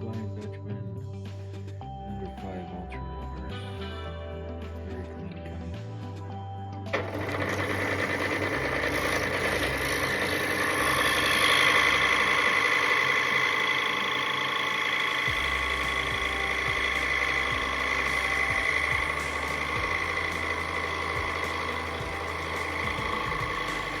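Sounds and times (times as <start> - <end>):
scroll saw cutting wood: 7.0 - 24.0.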